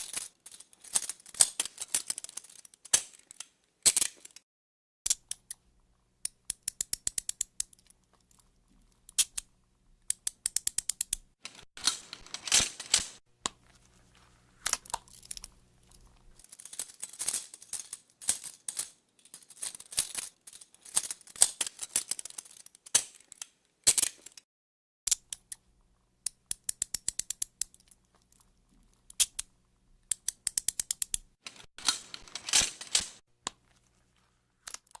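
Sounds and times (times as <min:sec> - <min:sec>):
handcuffs ratcheting clicks: 0:05.1 - 0:05.6, 0:06.2 - 0:13.2, 0:14.6 - 0:24.4, 0:25.1 - 0:25.6, 0:26.2 - 0:29.5, 0:30.1 - 0:33.2, 0:34.6 - 0:35.0.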